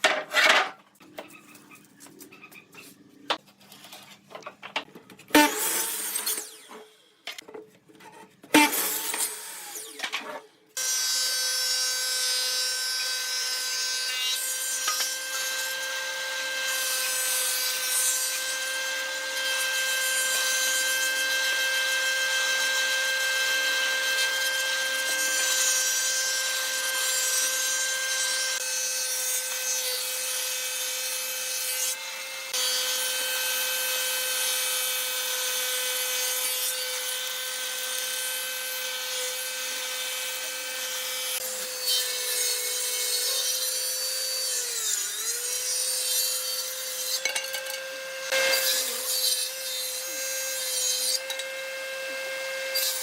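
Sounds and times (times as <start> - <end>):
power tool whining on wood: 8.5 - 53.0.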